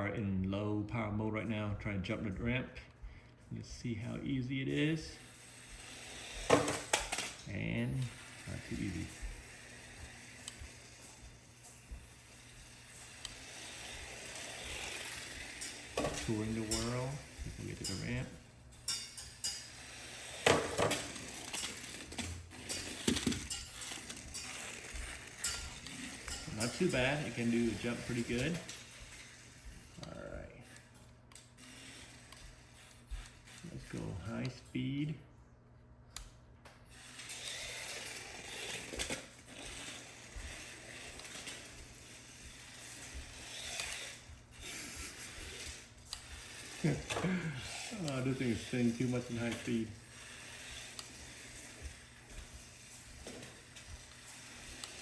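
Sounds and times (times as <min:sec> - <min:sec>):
toy electric motor and gears whirring: 0:03.8 - 0:35.1, 0:36.2 - 0:55.0
wheels spinning on slick floor: 0:04.6 - 0:30.8, 0:31.6 - 0:34.3, 0:36.9 - 0:55.0.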